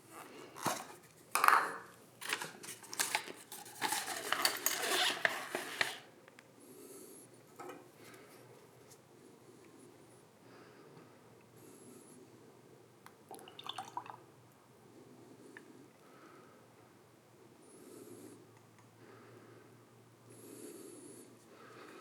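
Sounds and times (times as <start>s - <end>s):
hard objects clicking and rattling: 0.6s - 6.1s.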